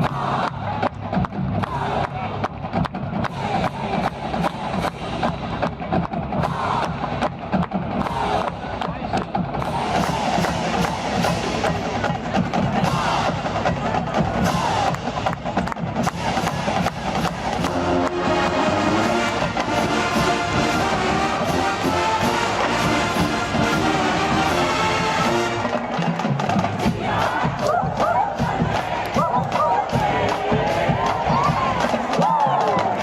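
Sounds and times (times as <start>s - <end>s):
drumline cadence: 0.0s - 33.0s
crowd yelling: 6.4s - 7.3s, 8.0s - 15.3s, 16.0s - 33.0s
brass holding chords: 17.4s - 26.0s.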